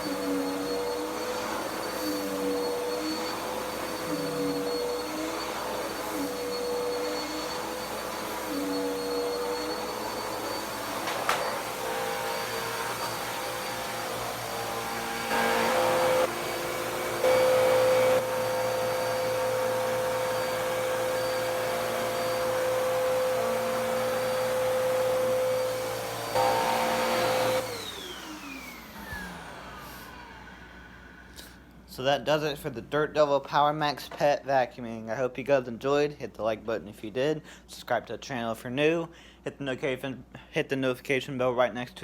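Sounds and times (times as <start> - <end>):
motor winding down whine: 0.0 - 30.8
upright vacuum running: 0.0 - 31.3.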